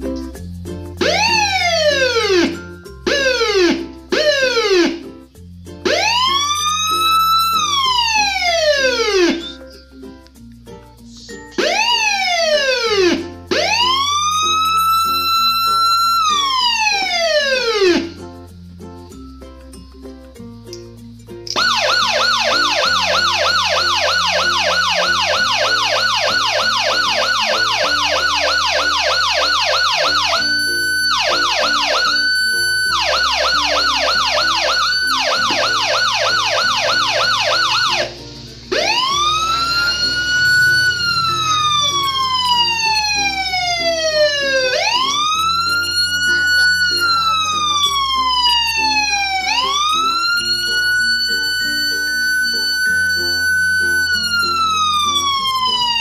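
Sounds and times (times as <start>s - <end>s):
electronic siren yelp: 1.0s - 5.0s, 5.9s - 9.6s, 11.6s - 18.2s, 21.5s - 56.0s
slow siren wail: 1.0s - 5.0s, 5.9s - 9.6s, 11.6s - 18.2s, 21.6s - 56.0s
short steady siren tone: 38.7s - 42.8s.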